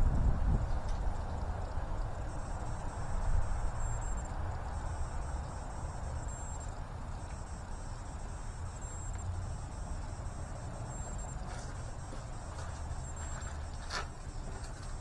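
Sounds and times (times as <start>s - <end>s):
low steady rumble: 0.0s - 5.3s.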